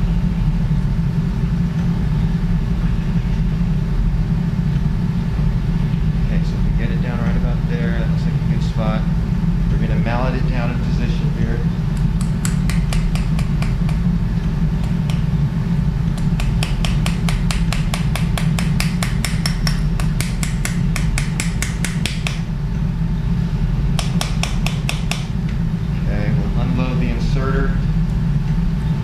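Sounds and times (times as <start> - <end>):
steady low hum: 0.0 - 29.0
mallet tapping metal guide: 12.0 - 14.0, 16.1 - 22.5, 24.0 - 25.3.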